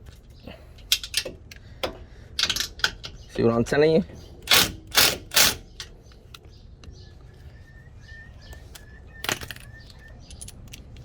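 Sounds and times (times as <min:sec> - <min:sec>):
high bird chirps: 0:05.7 - 0:10.5.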